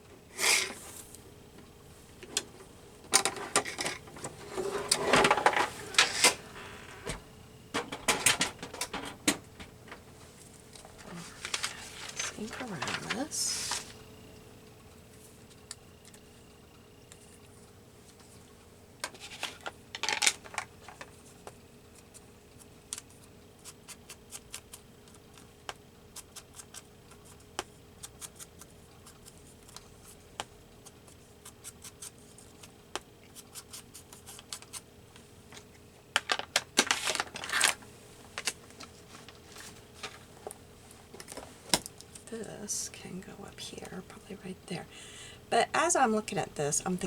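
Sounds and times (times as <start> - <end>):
paper scratching and rustling: 11.0 - 14.0, 36.8 - 37.8.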